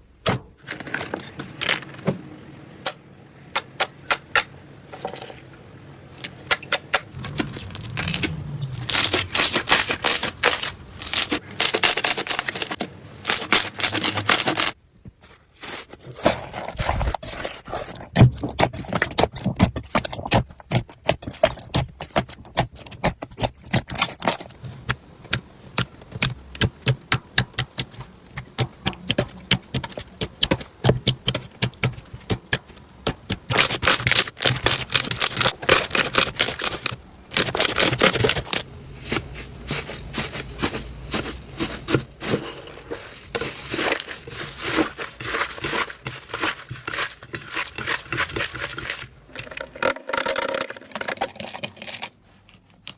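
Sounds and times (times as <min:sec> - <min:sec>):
slime crackling and popping: 0:06.5 - 0:14.8, 0:26.1 - 0:38.6.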